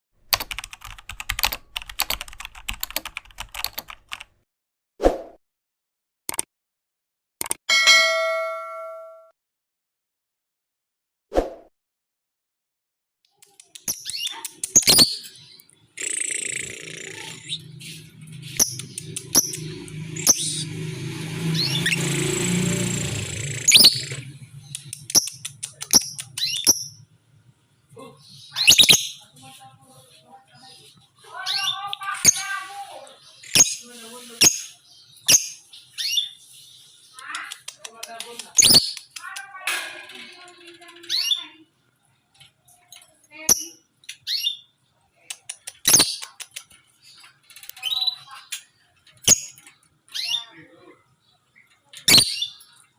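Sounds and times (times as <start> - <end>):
keyboard typing clicks: 0.3 - 4.3
lovebird chirping: 13.8 - 20.8, 23.2 - 27.1, 28.2 - 29.3.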